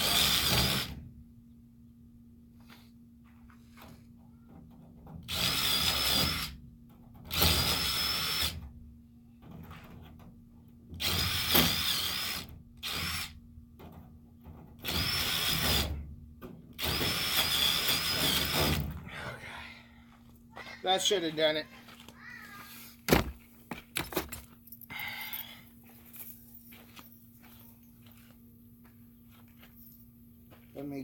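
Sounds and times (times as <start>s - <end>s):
power tool whining bursts: 0.0s - 1.0s, 5.3s - 6.6s, 7.3s - 8.6s, 11.0s - 13.4s, 14.8s - 16.0s, 16.8s - 18.9s.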